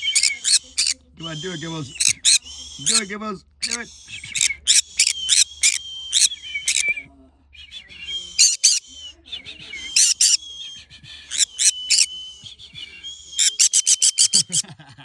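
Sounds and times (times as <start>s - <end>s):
parrot chirping: 0.0s - 7.0s, 7.6s - 14.6s
parrot whistling held note: 4.2s - 7.0s, 7.8s - 8.9s, 11.3s - 14.6s.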